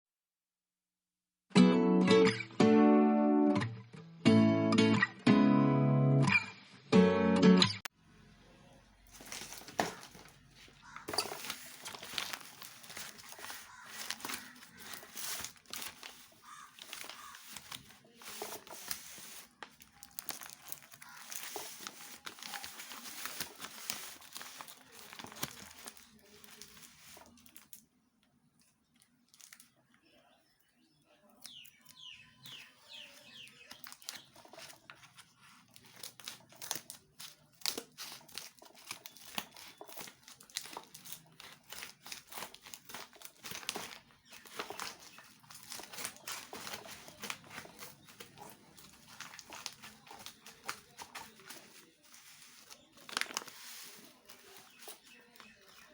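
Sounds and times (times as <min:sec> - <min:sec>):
packaging crinkling and tearing: 0:09.1 - 0:27.8, 0:28.9 - 0:29.8, 0:31.4 - 0:55.9.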